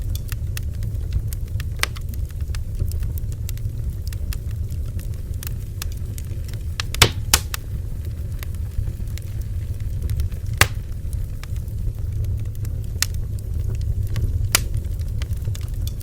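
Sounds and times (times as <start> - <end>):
low rumble of flame: 0.0 - 16.0
small crackles: 0.0 - 16.0
loud wood pops: 6.8 - 7.6, 10.6 - 10.8.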